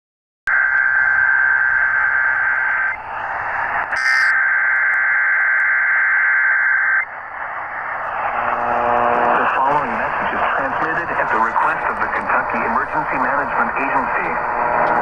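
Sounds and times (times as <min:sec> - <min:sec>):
radio hiss: 0:00.5 - 0:15.0
static crackle: 0:00.5 - 0:15.0
buzzy two-tone digital screech: 0:03.9 - 0:05.4.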